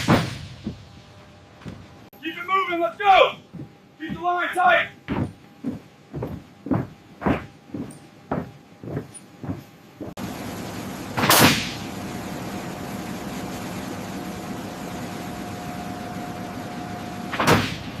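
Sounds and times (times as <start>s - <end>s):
engine drone: 5.2s - 18.0s.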